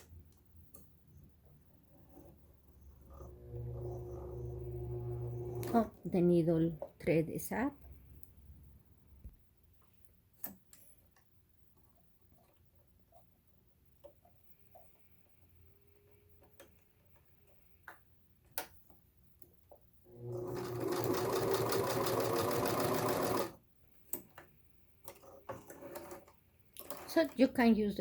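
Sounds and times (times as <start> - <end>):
sewing machine running: 3.0 - 6.0, 20.1 - 23.6.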